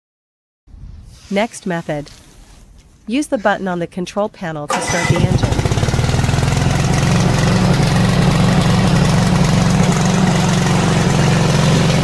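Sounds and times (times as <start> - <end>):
mower gasoline engine running: 4.7 - 12.0.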